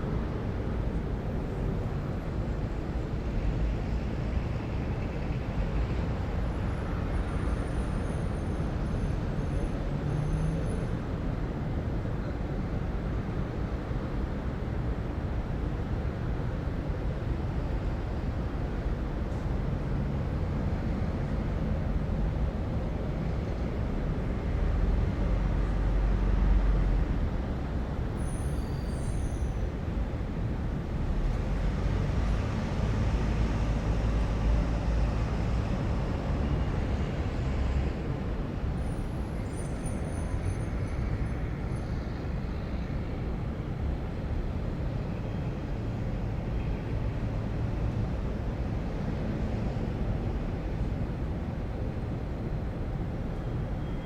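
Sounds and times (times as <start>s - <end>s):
distant road traffic rumble: 17.2s - 54.0s.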